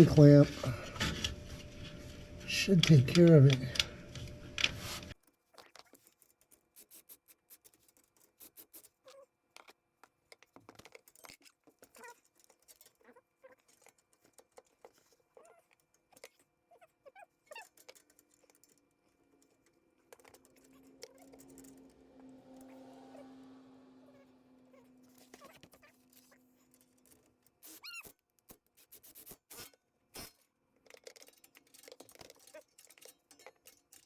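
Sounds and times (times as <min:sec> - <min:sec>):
hand tools clicking and tapping: 0:02.4 - 0:05.1, 0:17.5 - 0:23.1, 0:30.2 - 0:34.0
short squeaks: 0:19.4 - 0:28.2.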